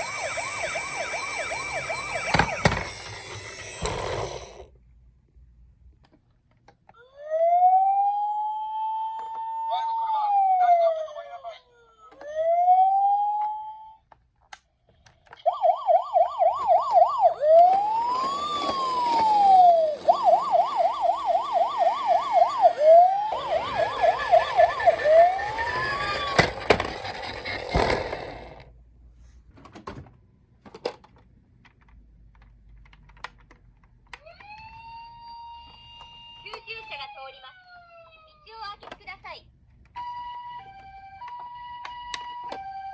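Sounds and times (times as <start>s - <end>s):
toy electronic siren: 0.0s - 4.6s, 7.0s - 14.0s, 15.3s - 28.4s, 34.2s - 38.8s, 40.0s - 42.9s.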